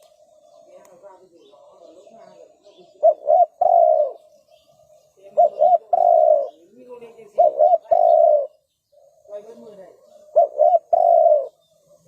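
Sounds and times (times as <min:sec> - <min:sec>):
dove cooing: 0:00.0 - 0:12.0
fainter lower cooing: 0:05.4 - 0:06.6, 0:07.4 - 0:08.6, 0:10.3 - 0:11.6.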